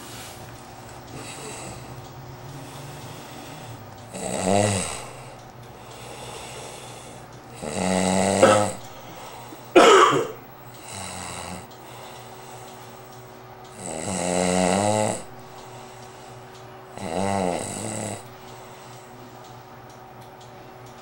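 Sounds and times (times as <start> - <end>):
person snoring loudly: 2.6 - 5.3, 7.6 - 8.8, 9.8 - 11.7, 13.8 - 15.3, 17.0 - 18.2.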